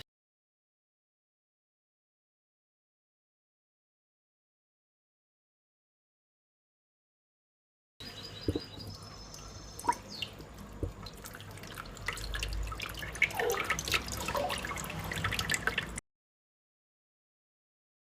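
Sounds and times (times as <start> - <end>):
water dripping from tap into sink: 8.4 - 16.0
bird splashing while bathing: 9.8 - 16.0.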